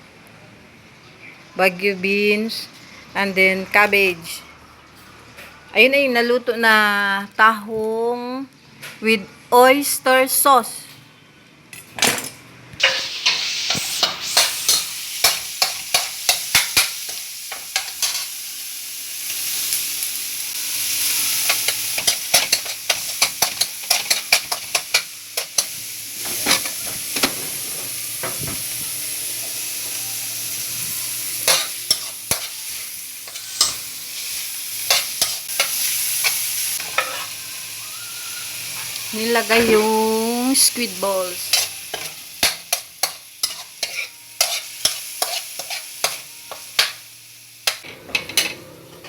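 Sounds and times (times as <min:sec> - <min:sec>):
food sizzling in hot oil: 0:12.8 - 0:48.5
spatula scraping a pan: 0:34.9 - 0:37.4, 0:41.5 - 0:46.2.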